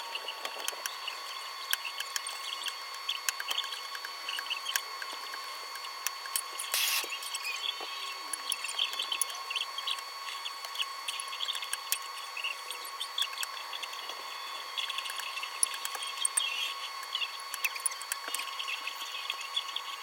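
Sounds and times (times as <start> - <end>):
steady high hum: 0.0 - 20.0.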